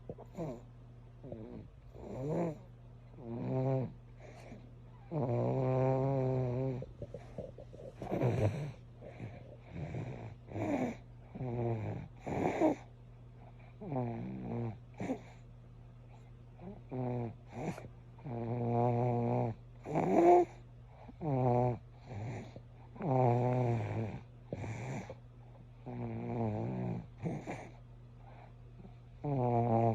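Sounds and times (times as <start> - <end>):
snoring with sliding pitch: 5.1 - 12.8.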